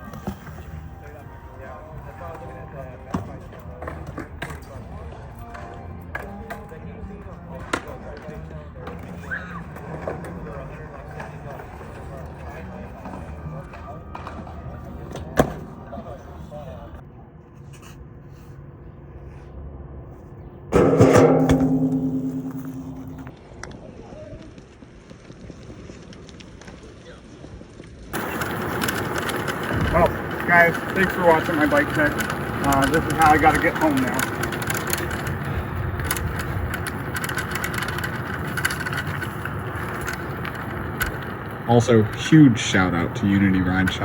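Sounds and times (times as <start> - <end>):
bike tyres rolling: 0.0 - 16.8, 20.8 - 44.0
bike crashing onto metal roof: 20.8 - 23.3
metal ringing hum: 20.8 - 23.3.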